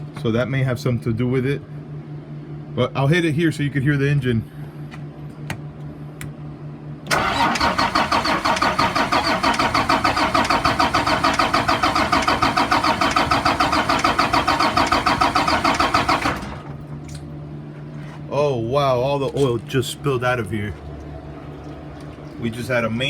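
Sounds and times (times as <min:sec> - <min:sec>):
bus engine cranking by starter motor: 0:07.1 - 0:16.8.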